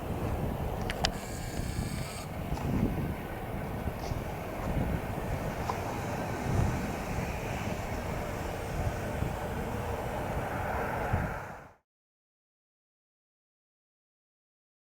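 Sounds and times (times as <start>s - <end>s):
airliner engine noise: 0.0s - 11.8s
wind buffeting microphone: 0.0s - 11.8s.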